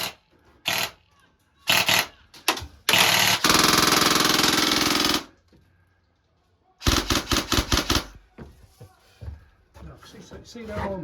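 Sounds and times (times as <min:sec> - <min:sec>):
airsoft gun firing: 0:06.8 - 0:08.2.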